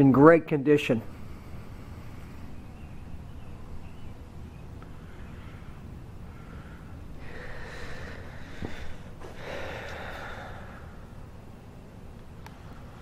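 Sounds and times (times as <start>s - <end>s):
low background rumble: 0.0s - 13.0s
person breathing: 1.1s - 2.7s, 4.9s - 11.2s.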